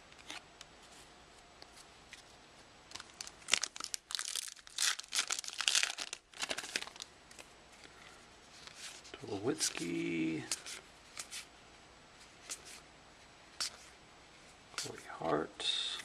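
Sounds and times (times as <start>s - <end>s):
wrapper tearing and crinkling: 2.9s - 7.1s.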